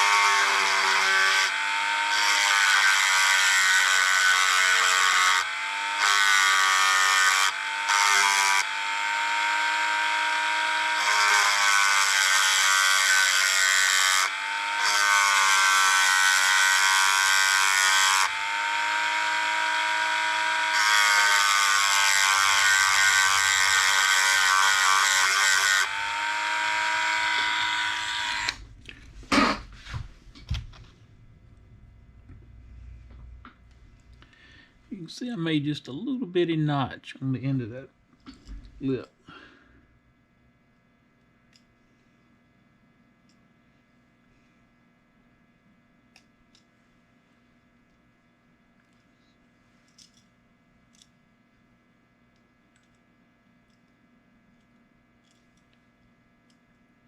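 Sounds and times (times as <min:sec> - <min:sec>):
high-speed motor tool whining: 0:00.0 - 0:28.6.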